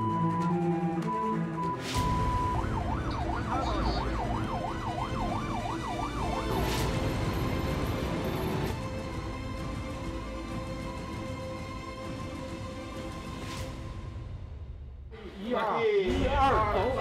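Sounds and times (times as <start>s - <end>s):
ambulance siren yelping: 0.0s - 8.2s.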